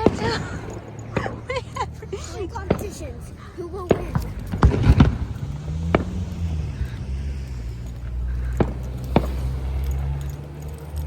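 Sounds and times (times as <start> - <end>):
car engine running: 0.0 - 11.0
sharp pops: 2.5 - 11.0.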